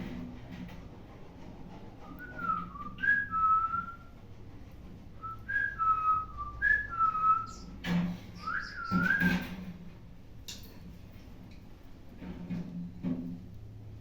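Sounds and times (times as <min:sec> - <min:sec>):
person whistling: 0:02.1 - 0:04.1, 0:05.2 - 0:07.6, 0:08.4 - 0:09.3.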